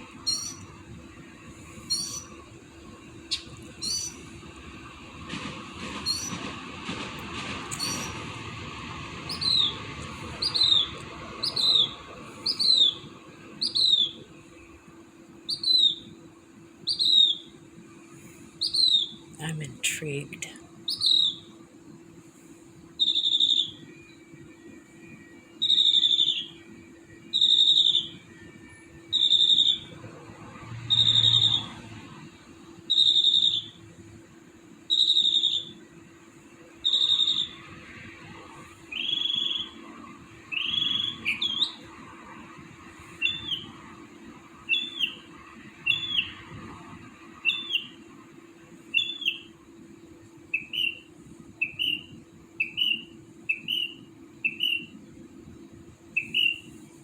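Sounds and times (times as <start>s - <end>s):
faint steady hum: 0.0s - 6.5s, 7.2s - 57.0s
bird whistling falling note: 0.3s - 0.6s, 6.0s - 6.4s, 7.7s - 8.2s, 9.3s - 9.8s, 23.0s - 23.8s, 27.3s - 28.2s, 34.9s - 35.7s, 38.9s - 39.8s, 40.5s - 41.8s, 51.6s - 54.9s, 56.2s - 56.7s.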